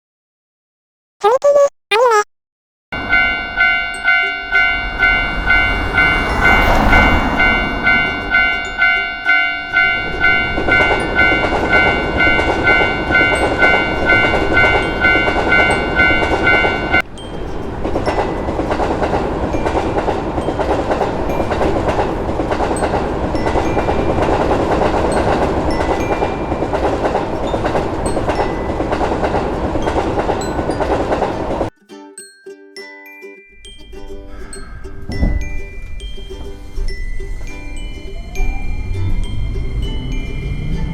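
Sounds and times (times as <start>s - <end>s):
level-crossing warning bell ringing: 3.0s - 31.7s, 34.3s - 40.9s
train wheels rumbling and clattering: 17.6s - 31.7s.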